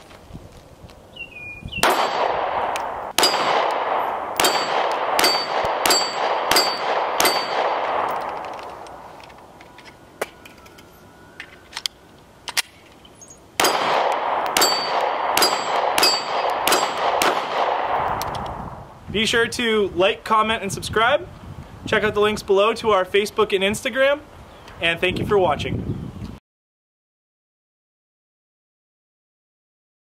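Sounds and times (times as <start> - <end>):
pistol shots: 1.8 - 9.0, 13.6 - 18.3
metallic clang and ring: 4.4 - 7.6, 14.6 - 17.0.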